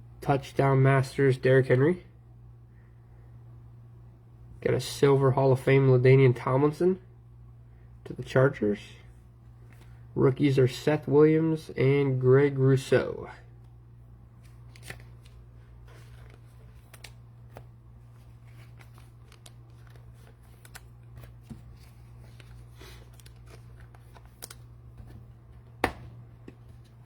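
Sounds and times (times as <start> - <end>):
steady low hum: 0.0 - 27.0
cards and packaging rustling: 14.4 - 25.6.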